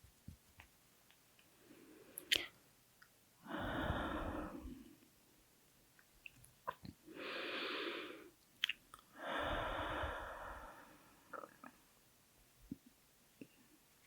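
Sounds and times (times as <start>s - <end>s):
wet mouth clicks: 2.2s - 3.1s, 8.6s - 9.1s
heavy slow breathing: 3.4s - 5.0s, 7.1s - 8.3s, 9.2s - 11.3s.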